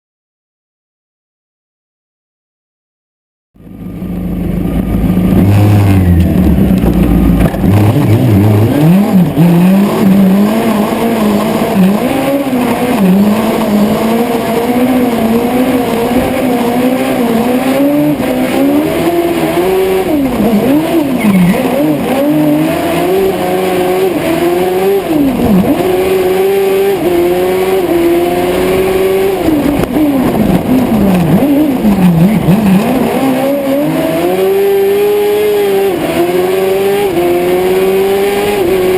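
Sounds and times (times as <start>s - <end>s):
racing engine revving: 4.5s - 38.9s.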